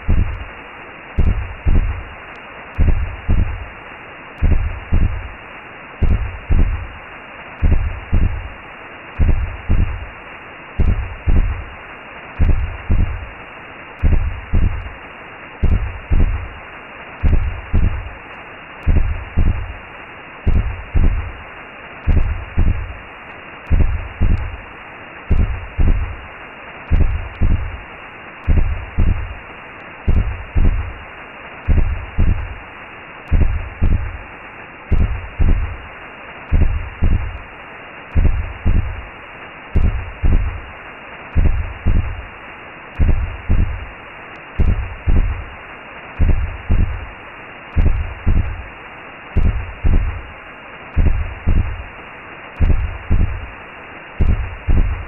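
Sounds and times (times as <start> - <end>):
heartbeat: 0.0 - 0.5, 1.2 - 2.1, 2.8 - 3.7, 4.4 - 5.3, 6.0 - 7.0, 7.6 - 8.6, 9.2 - 10.1, 10.8 - 11.8, 12.4 - 13.3, 14.0 - 15.0, 15.6 - 16.6, 17.2 - 18.2, 18.8 - 19.8, 20.4 - 21.4, 22.0 - 23.0, 23.7 - 24.6, 25.3 - 26.2, 26.9 - 27.8, 28.4 - 29.4, 30.1 - 31.0, 31.6 - 32.6, 33.3 - 34.2, 34.9 - 35.8, 36.5 - 37.4, 38.1 - 39.1, 39.8 - 40.7, 41.3 - 42.3, 43.0 - 43.9, 44.6 - 45.5, 46.2 - 47.1, 47.7 - 48.7, 49.4 - 50.3, 51.0 - 51.9, 52.6 - 53.5, 54.2 - 55.0
whooshing hiss: 0.0 - 55.0.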